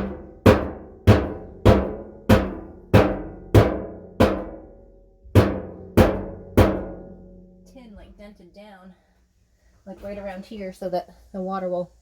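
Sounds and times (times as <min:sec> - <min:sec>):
rock hammering metal bathtub: 0:00.0 - 0:07.7.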